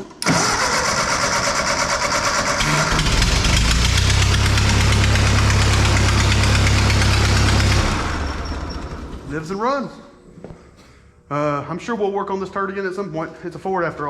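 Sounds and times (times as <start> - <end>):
tractor engine idling: 0.2 - 9.4.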